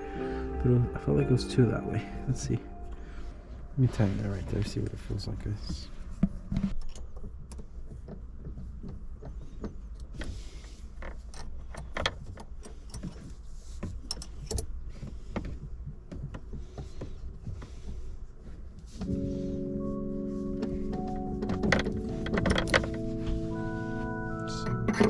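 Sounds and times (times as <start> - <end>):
gear shifter clicks and rattles: 6.6 - 19.1, 20.9 - 23.1.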